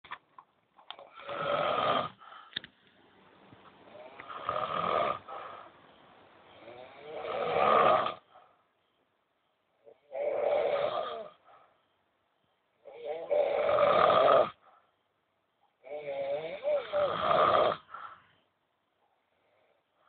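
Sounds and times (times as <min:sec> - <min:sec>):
man snoring: 0:01.0 - 0:02.2, 0:03.9 - 0:05.7, 0:06.5 - 0:08.2, 0:09.8 - 0:11.4, 0:12.8 - 0:14.6, 0:15.8 - 0:17.9.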